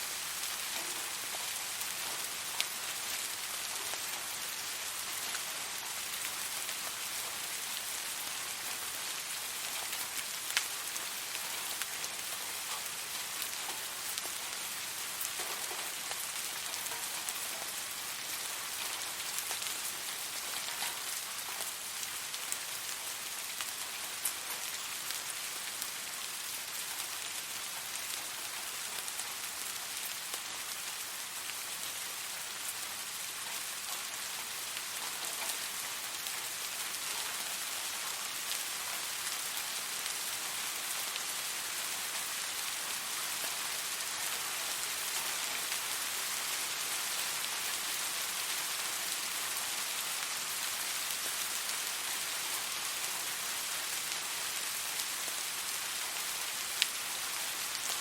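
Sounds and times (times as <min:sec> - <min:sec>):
steady rain hiss: 0:00.0 - 0:58.0
raindrops ticking: 0:00.4 - 0:04.4.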